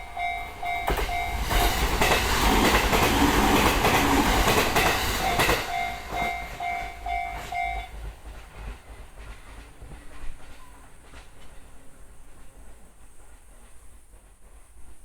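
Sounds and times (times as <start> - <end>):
level crossing warning bell: 0.0 - 2.2, 4.8 - 8.0
wheels clicking over rail joints: 0.0 - 11.7
electric train passing: 0.0 - 15.0.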